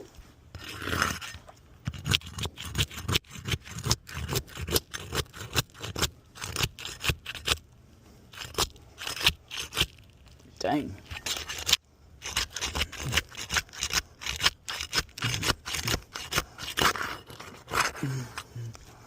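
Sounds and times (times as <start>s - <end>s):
pry bar scraping under shingles: 0.5s - 10.4s, 11.0s - 18.5s.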